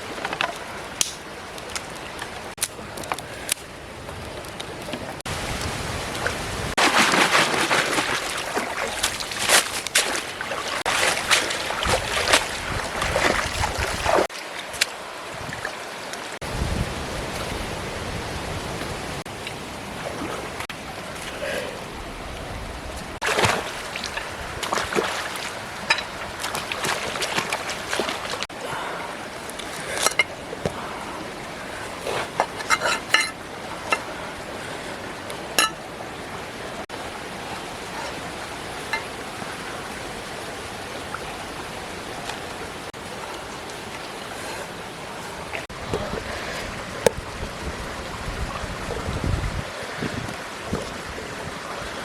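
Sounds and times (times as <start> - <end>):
rushing water-like noise: 0.0 - 52.0
clinks and knocks: 32.6 - 34.0, 35.6 - 35.8.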